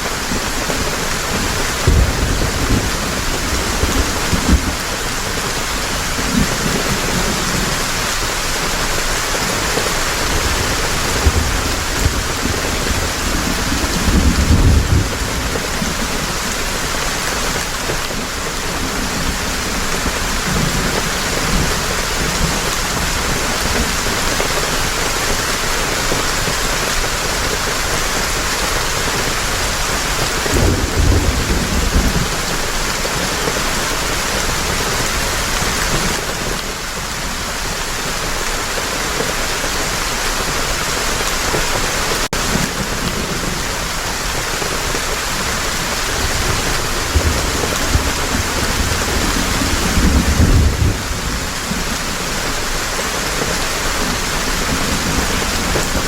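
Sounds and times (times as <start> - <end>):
heavy rain falling: 0.0 - 56.0
low rolls of thunder: 1.4 - 5.3, 10.2 - 17.0, 30.4 - 32.8, 45.8 - 52.6.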